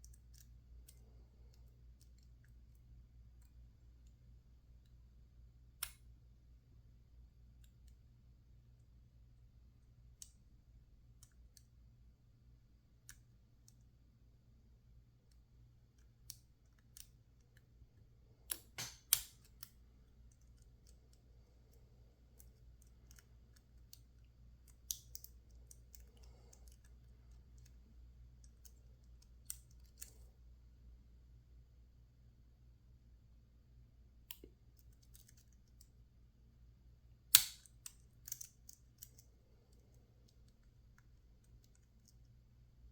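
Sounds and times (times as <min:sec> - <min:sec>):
metallic lock pick clicks: 0:18.5 - 0:19.8.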